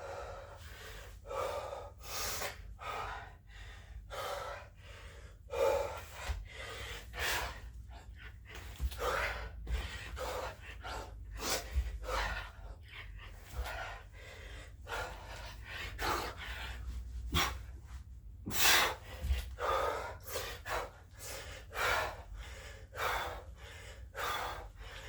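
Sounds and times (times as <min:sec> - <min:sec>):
man gasping breaths: 0:00.0 - 0:25.0.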